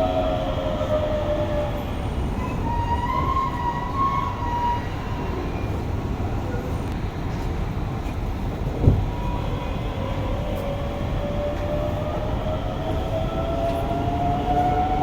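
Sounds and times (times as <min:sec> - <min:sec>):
train inverter whining: 0:00.0 - 0:05.3.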